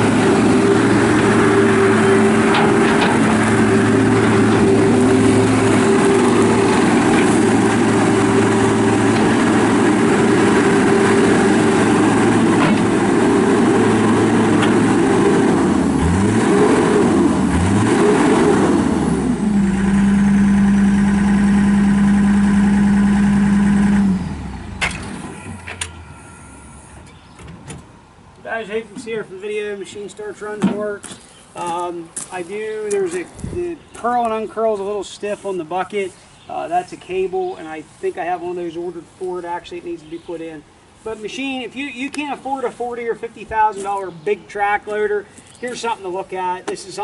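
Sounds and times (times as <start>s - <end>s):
diesel engine revving: 0.0s - 27.1s.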